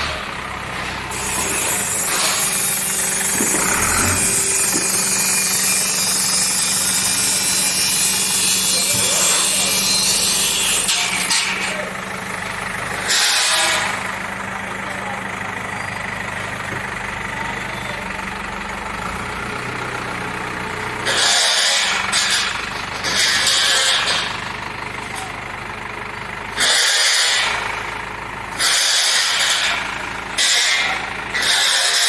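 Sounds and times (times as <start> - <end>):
diesel engine running: 0.0 - 32.0
harsh noise bursts: 1.1 - 8.7.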